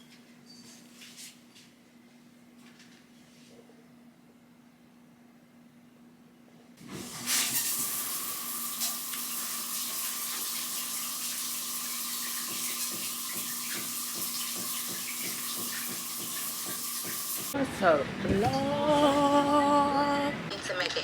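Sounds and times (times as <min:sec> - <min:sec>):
water running from a tap: 0:06.8 - 0:17.6.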